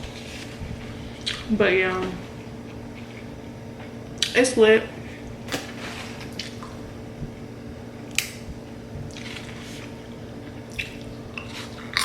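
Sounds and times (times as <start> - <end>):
faint steady hum: 0.0 - 12.0
chewing with wet smacks: 10.5 - 12.0.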